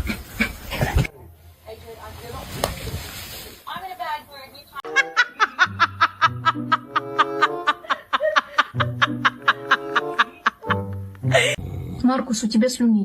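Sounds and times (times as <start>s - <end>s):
staccato background music: 4.8s - 8.0s, 8.6s - 11.6s.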